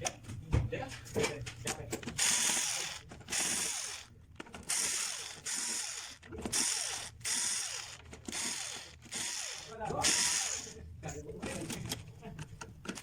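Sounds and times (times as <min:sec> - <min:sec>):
electrical contactor buzzing: 0:02.1 - 0:10.8.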